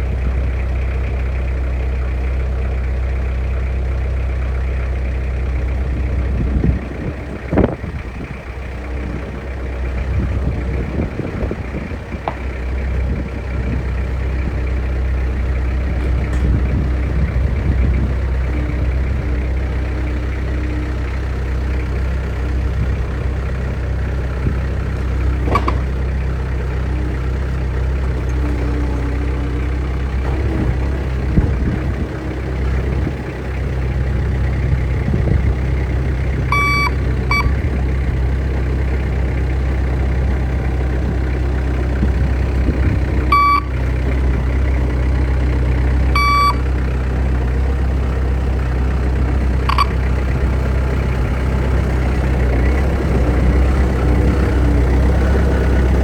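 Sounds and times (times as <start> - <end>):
diesel engine running: 0.0 - 56.0
short electronic beep: 36.5 - 37.6, 43.3 - 43.7, 46.2 - 46.6, 49.7 - 50.0.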